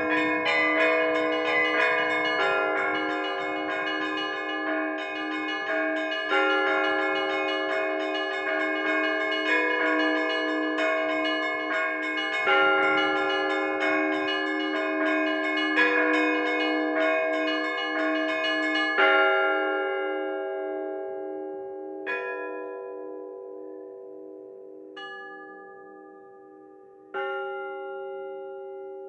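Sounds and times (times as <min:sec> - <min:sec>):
heavy bell strokes: 0:00.0 - 0:19.1
church bells pealing: 0:00.0 - 0:29.0.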